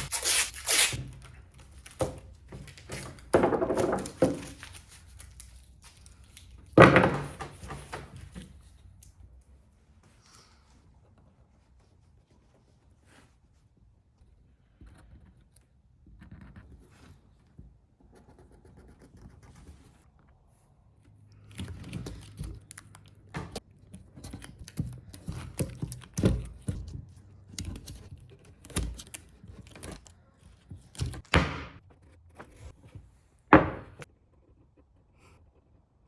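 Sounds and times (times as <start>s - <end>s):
wooden pieces knocking on workbench: 3.3s - 4.5s, 6.8s - 7.7s, 33.5s - 34.0s.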